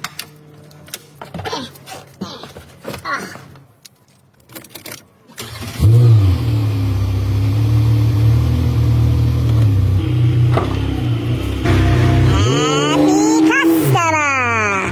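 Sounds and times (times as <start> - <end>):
car engine starting and idling: 5.4 - 13.3.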